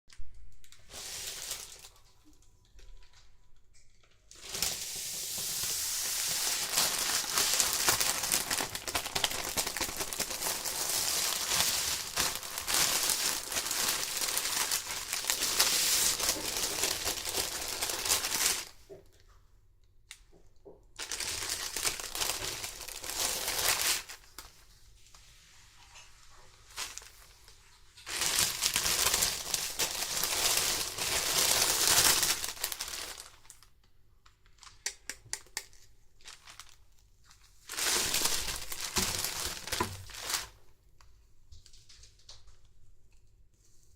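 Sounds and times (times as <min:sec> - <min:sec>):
packaging crinkling: 0:00.4 - 0:03.2, 0:04.3 - 0:18.9, 0:21.0 - 0:24.5, 0:26.6 - 0:35.0, 0:35.7 - 0:40.6.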